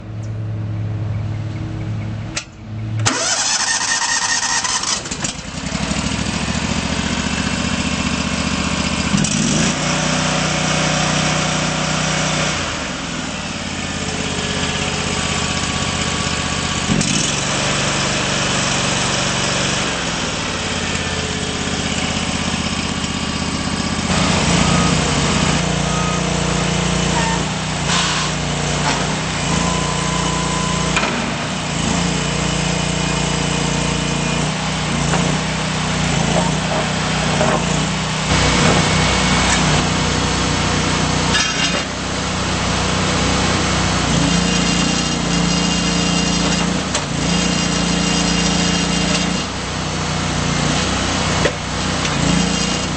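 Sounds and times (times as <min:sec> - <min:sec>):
backhoe engine starting and running: 0:00.0 - 0:52.9.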